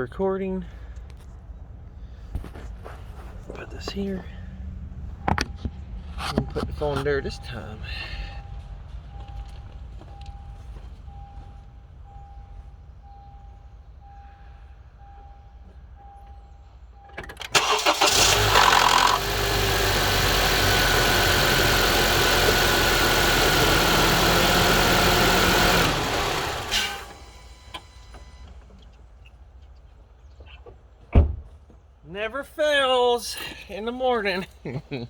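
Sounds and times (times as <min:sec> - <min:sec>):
engine grinding rattle: 0:17.2 - 0:28.7
starter cranking: 0:17.5 - 0:20.7
car engine idling: 0:17.5 - 0:29.1.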